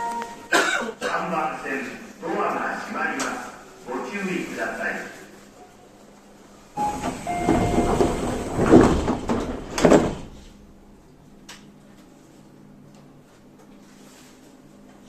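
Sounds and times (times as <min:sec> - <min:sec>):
low hum of train car: 0:00.0 - 0:15.0
train doors sliding closed: 0:06.7 - 0:11.2
door thud: 0:06.9 - 0:10.8.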